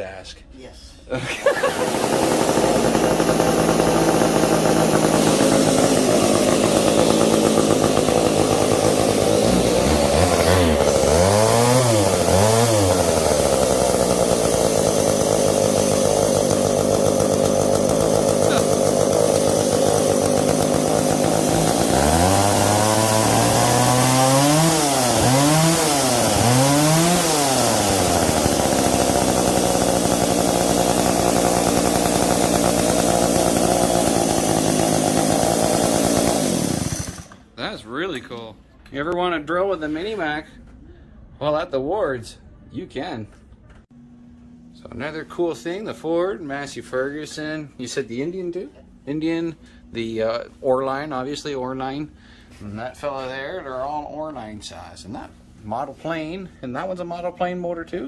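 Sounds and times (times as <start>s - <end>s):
two-stroke saw engine idling: 1.5s - 37.6s.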